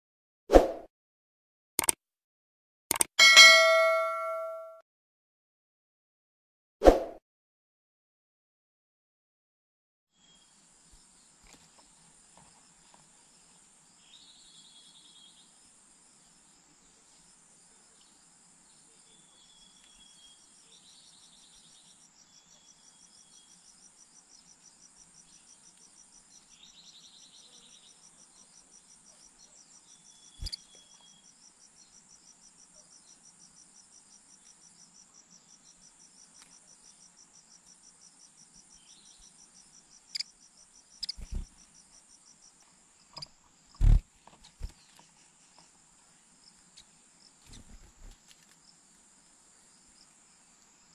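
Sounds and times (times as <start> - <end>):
sharp clicks: 1.8 - 2.0, 2.9 - 3.1
crickets chirring: 19.0 - 50.9
pulsing insect trill: 27.3 - 42.5.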